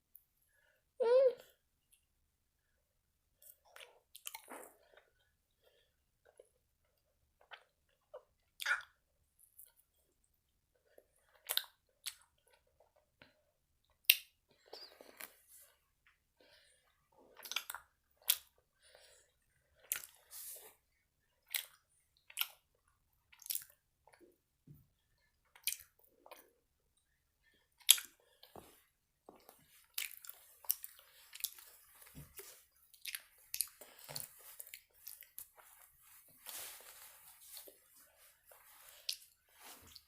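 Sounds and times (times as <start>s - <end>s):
chewing candy with mouth smacks: 3.4s - 4.8s, 7.4s - 9.8s, 11.3s - 14.4s, 17.3s - 18.6s, 21.4s - 24.4s, 25.4s - 26.5s, 27.8s - 28.5s, 29.4s - 35.6s.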